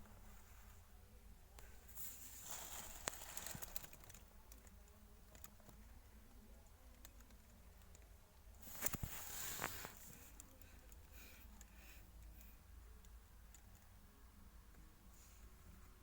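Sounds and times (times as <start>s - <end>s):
faint rustling: 0.0s - 5.9s, 8.6s - 12.5s
low background hiss: 0.0s - 16.0s.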